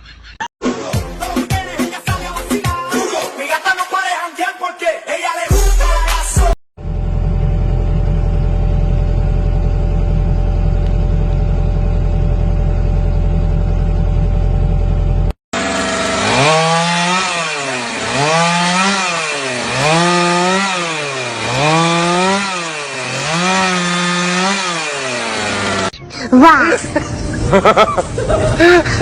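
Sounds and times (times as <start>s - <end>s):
low machine hum: 6.8s - 15.4s
power tool motor: 15.6s - 25.9s.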